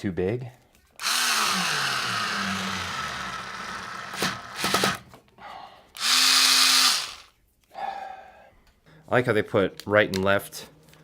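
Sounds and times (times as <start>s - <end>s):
cordless screwdriver motor whirring: 1.0s - 5.0s, 6.0s - 7.3s.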